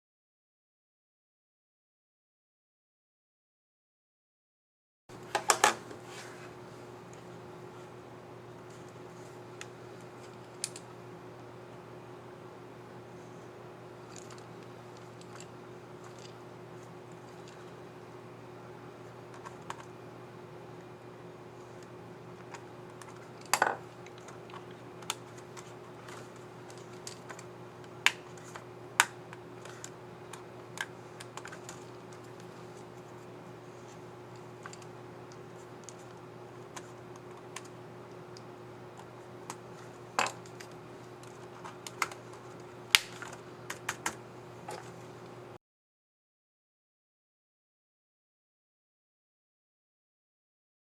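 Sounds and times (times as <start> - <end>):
steady low hum: 5.1 - 45.6.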